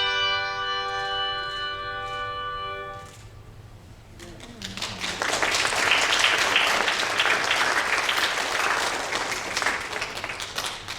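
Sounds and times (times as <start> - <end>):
audience applauding: 4.4 - 10.9.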